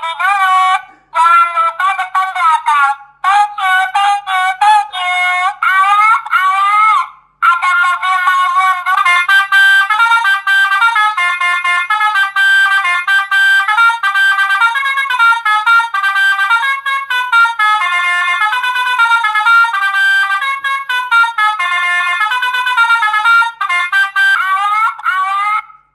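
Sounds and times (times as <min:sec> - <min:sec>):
reversing horn electronic melody: 0:07.7 - 0:25.7.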